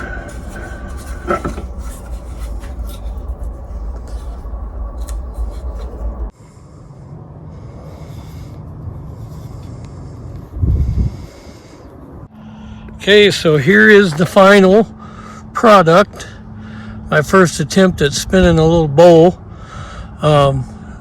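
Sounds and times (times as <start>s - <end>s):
rubbing on spinning wood: 0.0s - 6.3s
wood lathe humming: 0.0s - 6.3s.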